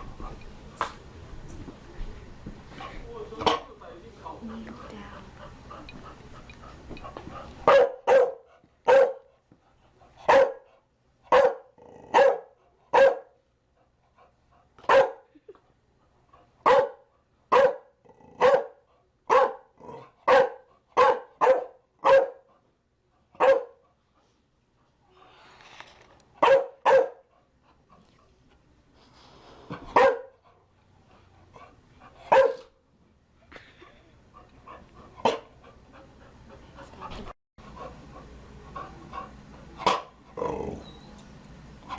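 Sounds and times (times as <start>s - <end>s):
dog barking: 7.7s - 9.3s, 10.3s - 10.7s, 11.3s - 13.4s, 14.9s - 15.2s, 16.6s - 22.5s, 23.4s - 23.8s, 26.4s - 27.3s, 29.9s - 30.4s, 32.3s - 32.7s, 35.2s - 35.4s, 39.8s - 40.1s.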